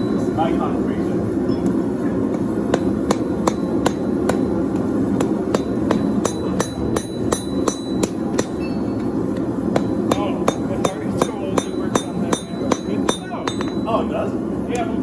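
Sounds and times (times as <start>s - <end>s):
hammer striking metal on anvil: 0.0s - 0.2s, 2.3s - 8.8s, 9.7s - 14.0s.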